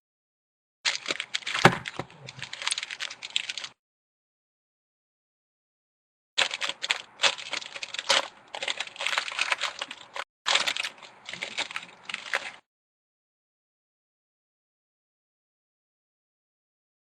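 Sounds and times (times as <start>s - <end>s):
card pack crinkling and clicking: 0.9s - 3.8s, 6.4s - 12.6s.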